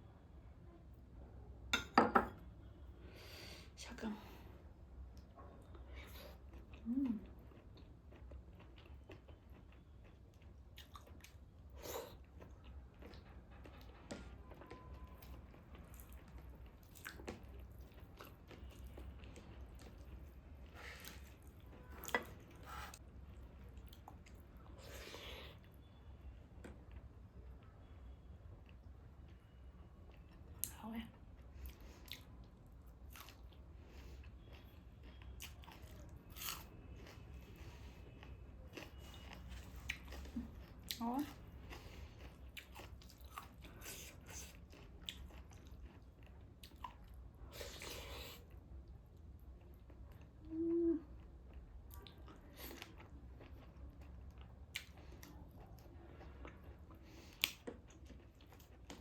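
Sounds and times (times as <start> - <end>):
person chewing food: 6.0 - 25.9, 31.3 - 50.4, 51.1 - 59.0
person humming: 50.5 - 51.1.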